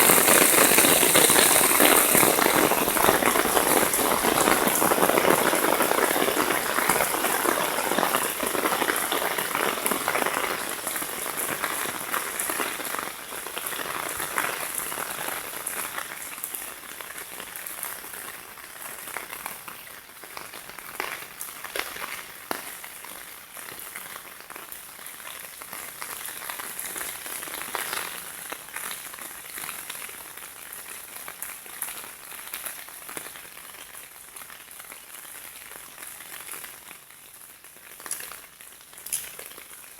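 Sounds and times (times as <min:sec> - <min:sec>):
heavy rain hissing: 0:00.0 - 0:16.6
raindrops striking close by: 0:00.0 - 0:39.9.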